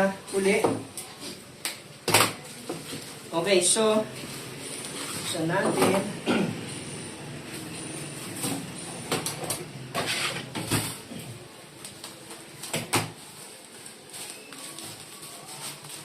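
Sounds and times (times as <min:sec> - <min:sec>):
packaging rustling: 0:11.8 - 0:16.0.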